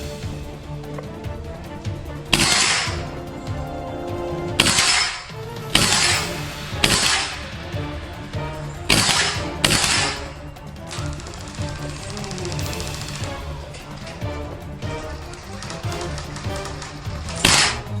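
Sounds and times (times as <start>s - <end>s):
background music: 0.0s - 18.0s
airsoft rifle shots: 2.4s - 3.0s, 4.6s - 7.5s, 8.9s - 10.3s.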